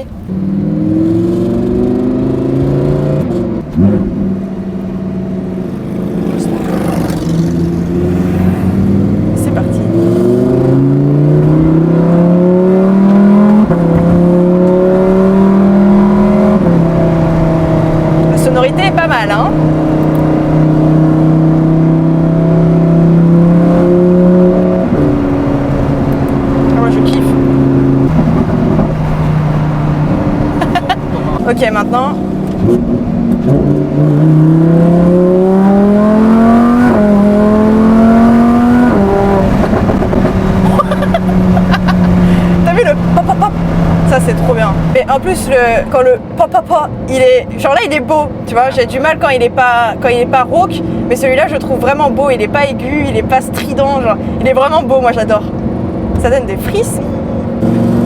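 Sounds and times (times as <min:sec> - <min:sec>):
car engine accelerating hard: 0:00.0 - 0:58.0
exhaust popping on overrun: 0:00.1 - 0:46.0.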